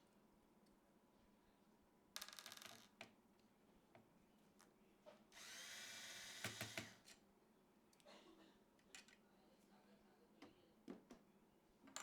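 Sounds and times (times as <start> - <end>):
electric screwdriver running: 5.4 - 7.0.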